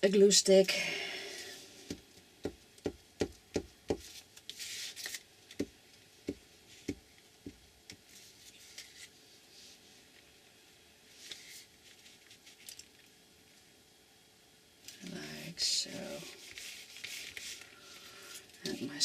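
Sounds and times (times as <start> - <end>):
paper rustling: 16.3 - 18.4.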